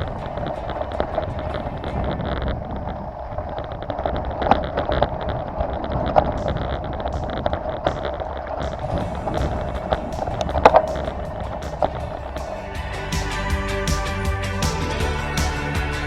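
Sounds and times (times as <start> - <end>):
wind buffeting microphone: 0.0 - 15.0
sharp knocks and clicks: 5.9 - 12.5.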